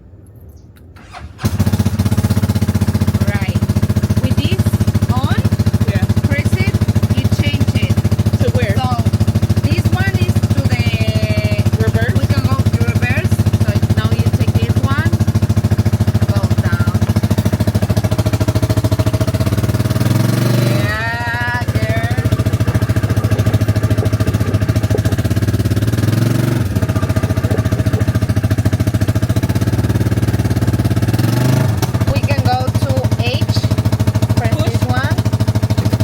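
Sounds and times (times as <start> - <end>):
small vehicle droning: 0.7 - 36.0
wavering high-pitched cry: 21.4 - 25.5.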